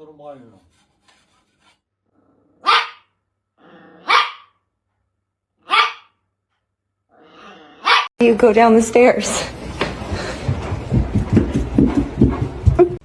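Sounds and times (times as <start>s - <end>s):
dog barking: 2.6s - 3.2s, 4.0s - 4.6s, 5.6s - 6.2s, 7.8s - 8.1s.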